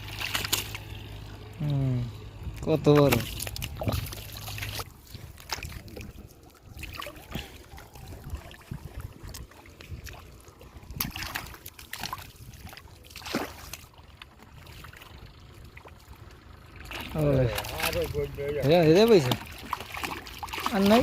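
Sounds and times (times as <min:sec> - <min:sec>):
hands splashing in shallow water: 0:00.0 - 0:01.0, 0:03.0 - 0:14.0, 0:19.1 - 0:21.0.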